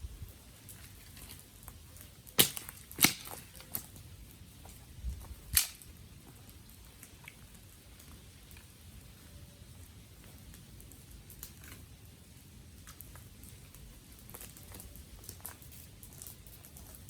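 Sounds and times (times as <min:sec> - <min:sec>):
faint steady crackle: 0:00.0 - 0:17.0
dry wood cracking sharply: 0:00.6 - 0:07.3.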